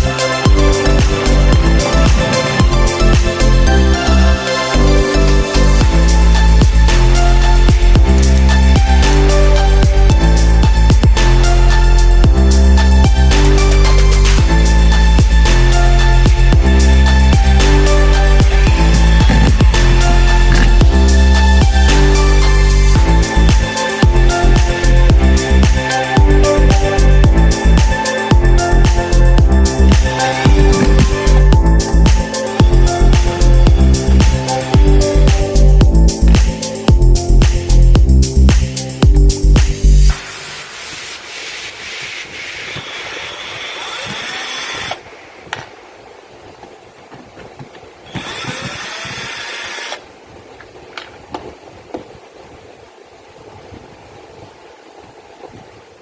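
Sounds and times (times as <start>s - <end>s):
electronic music with driving beat: 0.0s - 43.3s
power screwdriver motor whining: 42.7s - 45.0s, 48.1s - 50.0s.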